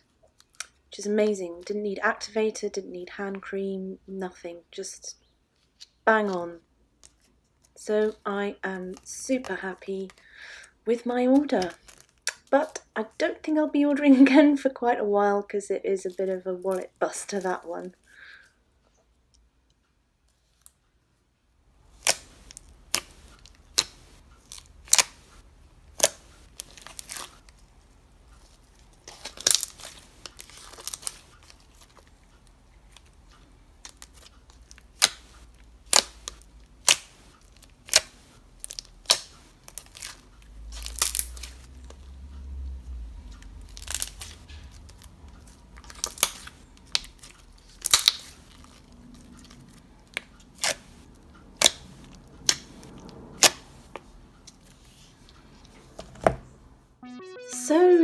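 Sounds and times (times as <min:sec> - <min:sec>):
slime squishing: 0:21.9 - 0:32.1, 0:33.8 - 0:42.0, 0:43.6 - 0:55.8
slime clicking and popping: 0:35.9 - 0:37.2, 0:40.8 - 0:41.5, 0:45.8 - 0:48.4, 0:51.6 - 0:52.8.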